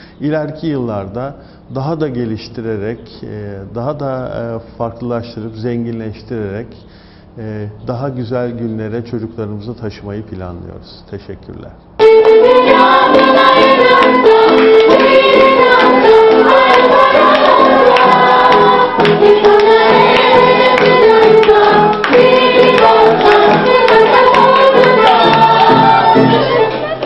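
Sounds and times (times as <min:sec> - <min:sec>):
steady beat: 0:12.0 - 0:26.9
group of voices singing: 0:12.0 - 0:27.0.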